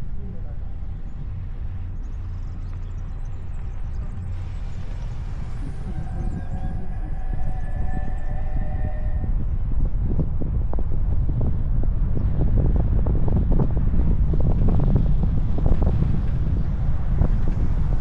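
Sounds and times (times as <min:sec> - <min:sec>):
faint steady tones: 0:00.0 - 0:09.6
low road and engine rumble: 0:00.0 - 0:18.0
wind buffeting microphone: 0:00.0 - 0:18.0.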